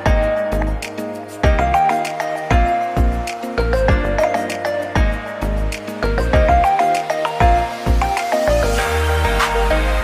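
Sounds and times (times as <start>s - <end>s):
melody over bass line: 2.5s - 10.0s.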